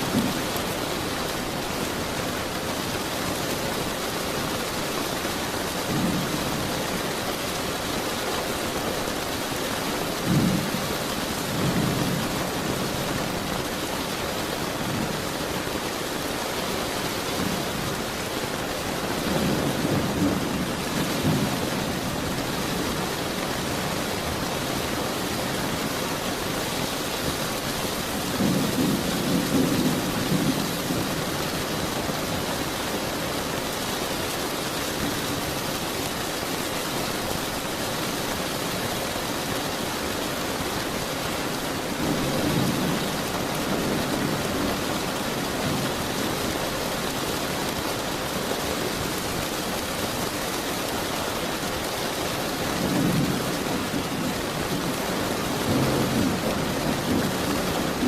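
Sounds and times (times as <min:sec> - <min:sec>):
distant thunder rumbling: 0:00.0 - 0:01.3, 0:10.1 - 0:13.7, 0:19.1 - 0:32.9, 0:41.6 - 0:46.5, 0:52.7 - 0:58.0
heavy rain: 0:00.0 - 0:58.0.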